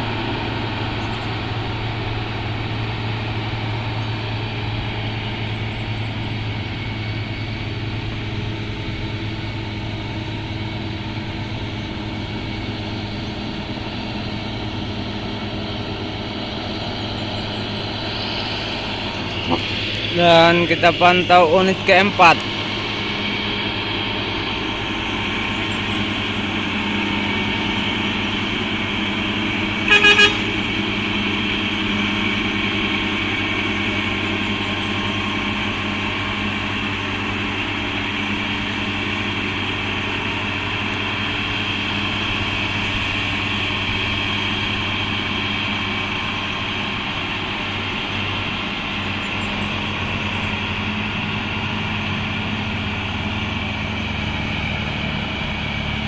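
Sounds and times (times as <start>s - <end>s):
truck engine droning under load: 0.0s - 56.0s
truck horn toots: 29.6s - 31.0s.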